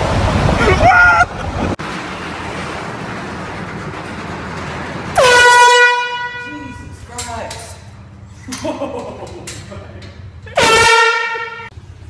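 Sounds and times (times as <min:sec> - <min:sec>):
air horn blast: 0:05.2 - 0:06.9, 0:10.6 - 0:11.8.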